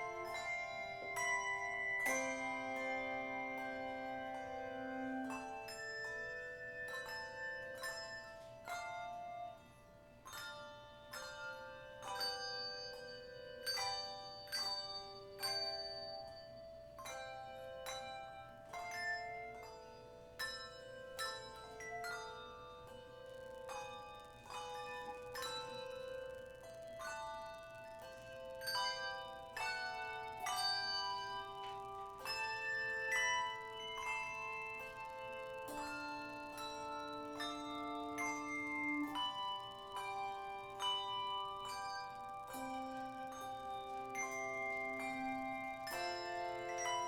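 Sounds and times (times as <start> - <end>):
slow bell-like melody: 0.0 - 47.0.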